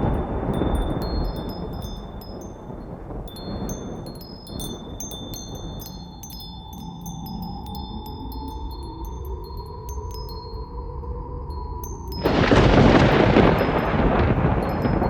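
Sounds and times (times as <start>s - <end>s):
thunder rumble: 0.0s - 6.2s, 12.1s - 15.0s
wind: 0.0s - 15.0s
wind chimes tinkling: 0.0s - 15.0s.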